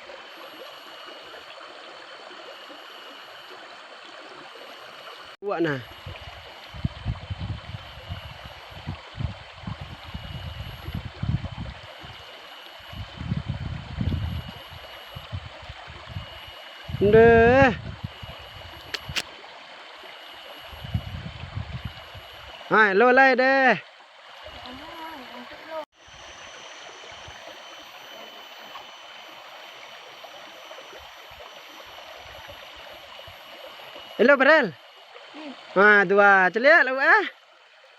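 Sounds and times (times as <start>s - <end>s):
thin high tone: 0.0s - 23.8s, 24.4s - 37.4s
flowing water rushing: 0.0s - 37.9s
faint thin high tone: 24.5s - 36.0s.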